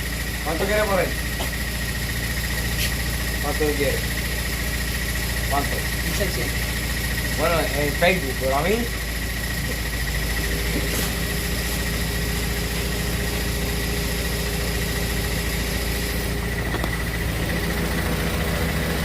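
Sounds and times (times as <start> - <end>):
car engine idling: 0.0 - 19.0.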